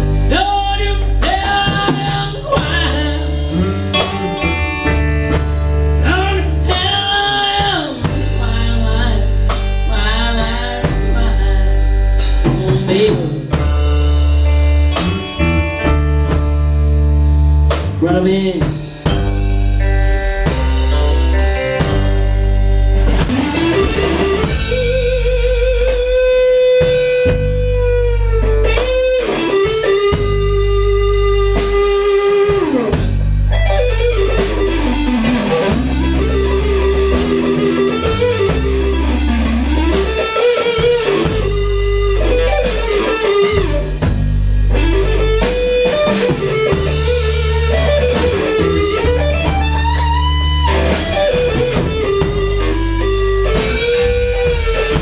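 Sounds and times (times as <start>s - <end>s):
bass guitar: 0.0s - 55.0s
drum kit: 0.0s - 55.0s
electric guitar bending notes: 0.0s - 55.0s.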